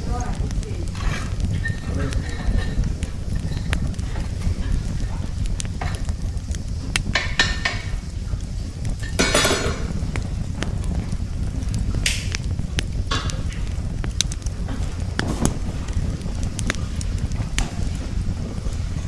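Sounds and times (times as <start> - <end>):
rustling: 0.0 - 19.0
wind rumbling on microphone: 0.0 - 19.0
clicks and knocks: 8.9 - 10.7.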